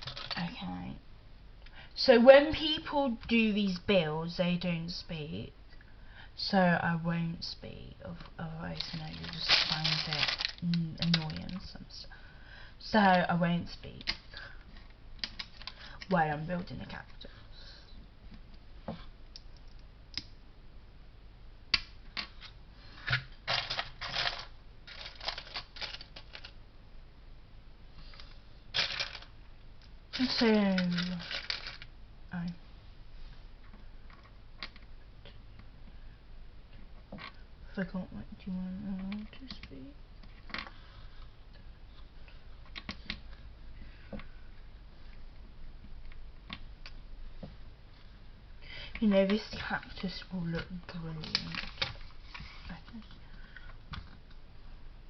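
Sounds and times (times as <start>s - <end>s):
low steady hum: 0.0s - 55.0s
plastic bricks clicking and rattling: 8.8s - 11.6s, 23.5s - 26.6s, 28.8s - 29.3s, 30.2s - 31.9s.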